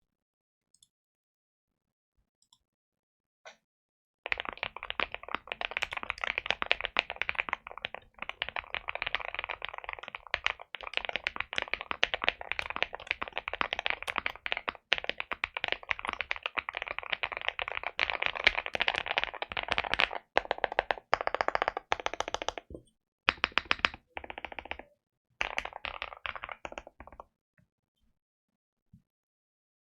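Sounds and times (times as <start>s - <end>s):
mechanical keyboard typing: 4.3s - 22.7s, 23.3s - 27.2s.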